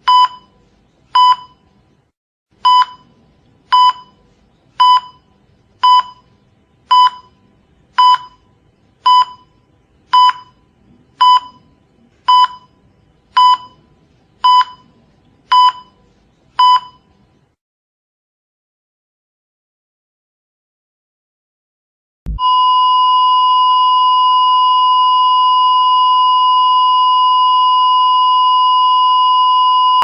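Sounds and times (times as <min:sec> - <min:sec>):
heart monitor beeps: 0:00.0 - 0:00.6, 0:01.2 - 0:01.6, 0:02.6 - 0:04.2, 0:04.8 - 0:06.3, 0:06.9 - 0:07.4, 0:08.0 - 0:10.6, 0:11.2 - 0:12.8, 0:13.4 - 0:13.8, 0:14.4 - 0:16.0, 0:16.6 - 0:17.1, 0:22.3 - 0:30.0.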